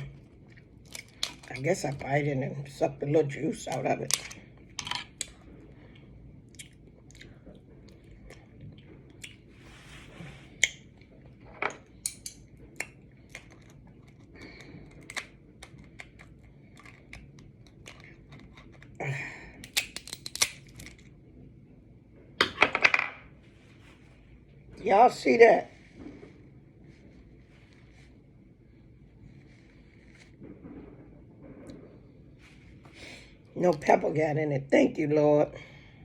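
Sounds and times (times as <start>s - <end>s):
crab shell cracking: 0.6s - 1.6s, 12.0s - 21.1s
chewing: 5.1s - 9.5s, 12.6s - 19.0s.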